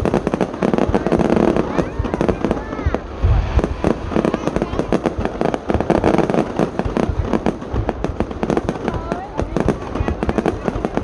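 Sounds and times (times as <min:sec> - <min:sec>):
fireworks booming: 0:00.0 - 0:11.0
fireworks cracking and popping: 0:00.0 - 0:11.0.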